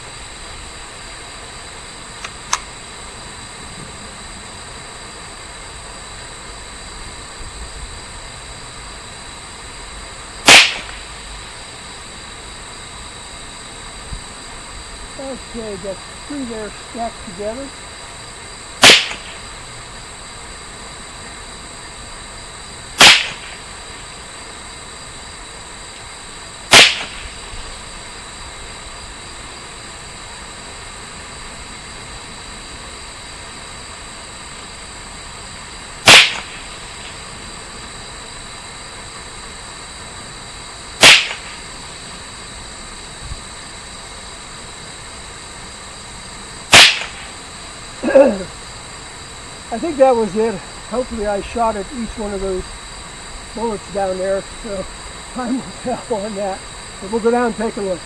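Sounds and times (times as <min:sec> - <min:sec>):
rifle shots: 0:10.4 - 0:11.1, 0:18.8 - 0:19.4, 0:23.0 - 0:23.7, 0:26.7 - 0:27.4, 0:36.0 - 0:37.2, 0:41.0 - 0:41.7, 0:46.7 - 0:47.4.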